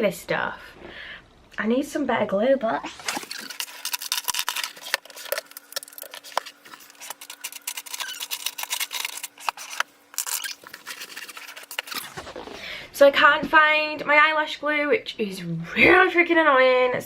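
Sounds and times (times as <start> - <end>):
makeup items clicking and rustling: 3.1 - 11.9.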